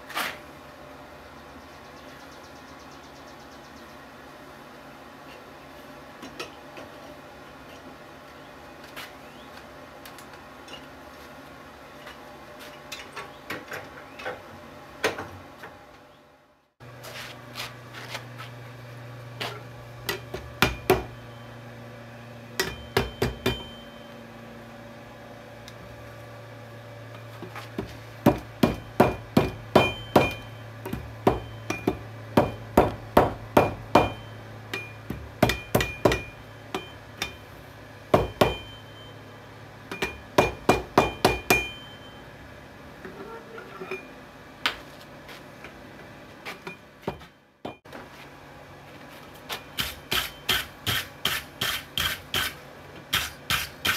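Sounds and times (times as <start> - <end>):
steady low hum: 0.0 - 53.9
hammer striking steel anvil: 20.1 - 21.2, 22.6 - 24.1, 28.6 - 37.5, 38.1 - 39.1, 39.9 - 42.2, 49.7 - 53.9.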